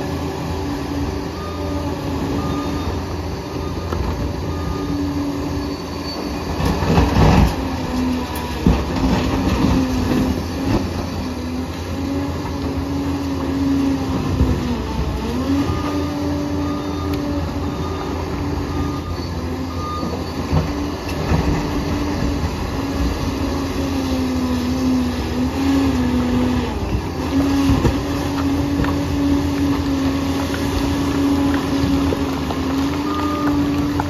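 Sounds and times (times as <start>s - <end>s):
bulldozer diesel engine rumbling: 0.0s - 34.0s.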